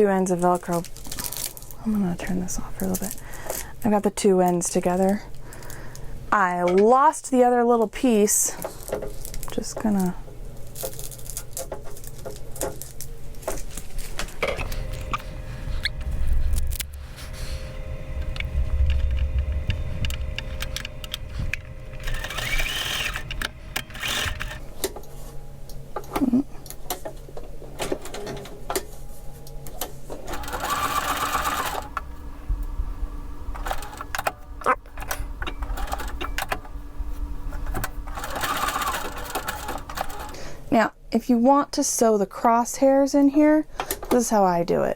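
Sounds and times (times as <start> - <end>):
sewing machine hum: 14.2 - 24.7, 30.1 - 40.5.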